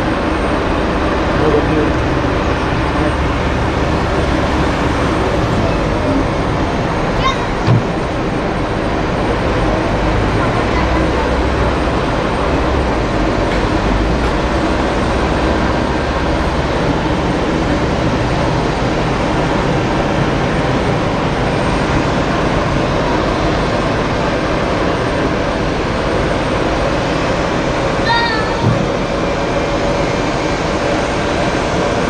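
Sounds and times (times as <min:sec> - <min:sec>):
jet engines running: 0:00.0 - 0:32.0.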